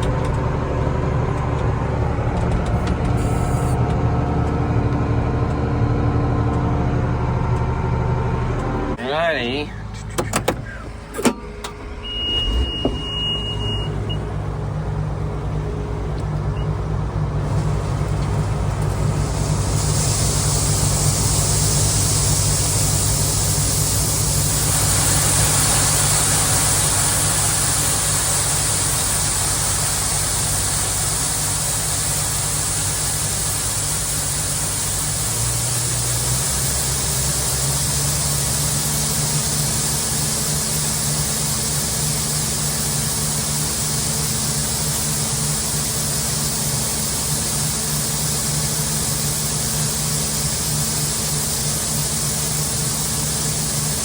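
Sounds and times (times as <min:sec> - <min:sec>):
diesel engine running under load: 0:00.0 - 0:54.0
short high beep: 0:12.0 - 0:14.3
hiss: 0:17.5 - 0:54.0.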